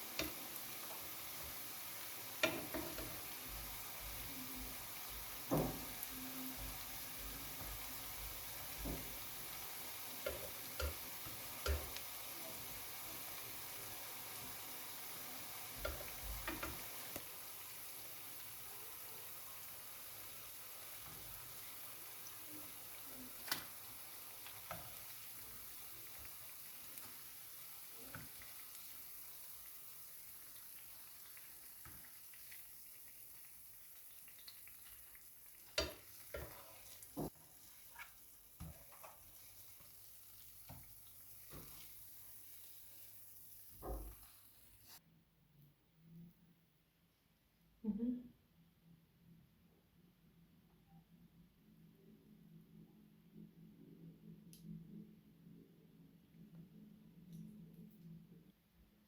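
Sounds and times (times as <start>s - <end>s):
potatoes sizzling in oil: 0.0s - 45.0s.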